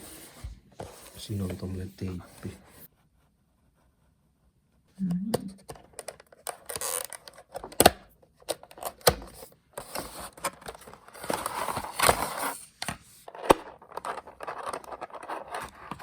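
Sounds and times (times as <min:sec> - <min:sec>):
packaging rustling and scraping: 0:08.7 - 0:16.0.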